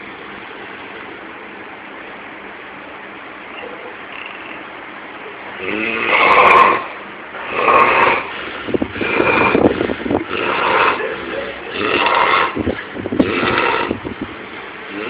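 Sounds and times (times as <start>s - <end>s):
person snoring loudly: 5.6s - 14.0s.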